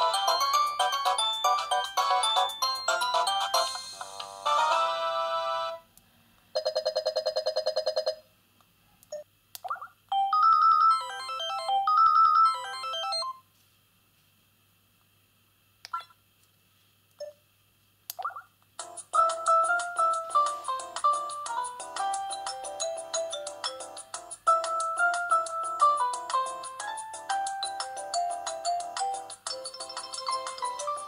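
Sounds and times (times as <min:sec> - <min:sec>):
phone ringtone tunes: 0:00.0 - 0:05.7, 0:06.6 - 0:08.2, 0:10.1 - 0:13.4, 0:18.8 - 0:31.0.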